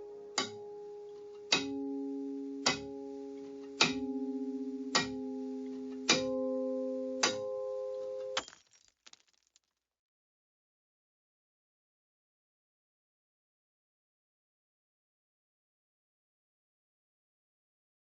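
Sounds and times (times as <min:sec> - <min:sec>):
slow held music chords: 0:00.0 - 0:08.4.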